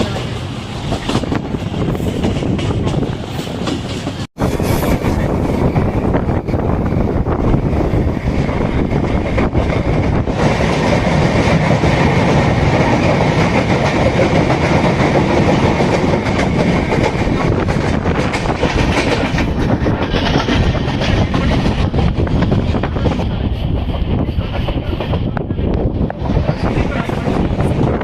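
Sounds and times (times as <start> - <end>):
train rumbling: 0.0 - 28.0
wheels clattering over rails: 8.0 - 23.2.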